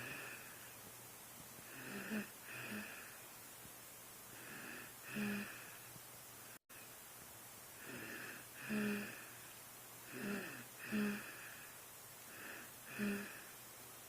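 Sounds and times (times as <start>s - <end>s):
buzzing snore: 0.0s - 0.7s, 1.6s - 3.2s, 4.3s - 5.9s, 7.8s - 9.4s, 10.0s - 11.7s, 12.3s - 13.5s
hissy breathing: 0.0s - 0.9s, 4.3s - 7.0s, 7.7s - 13.6s.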